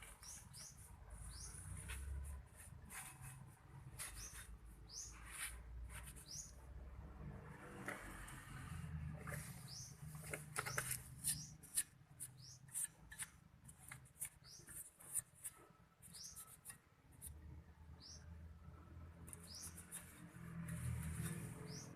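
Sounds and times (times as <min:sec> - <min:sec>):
bird chirping: 0:00.0 - 0:02.3, 0:04.0 - 0:05.5, 0:06.1 - 0:06.7, 0:09.2 - 0:13.3, 0:14.1 - 0:20.2, 0:21.2 - 0:21.9.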